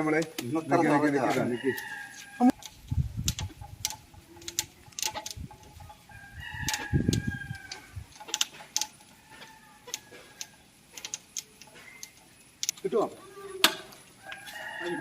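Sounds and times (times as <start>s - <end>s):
rooster crowing: 1.2s - 2.6s, 6.0s - 8.0s, 9.1s - 10.6s, 14.2s - 15.0s
sharp clicks and knocks: 2.5s - 6.0s, 6.6s - 12.9s, 13.6s - 14.0s.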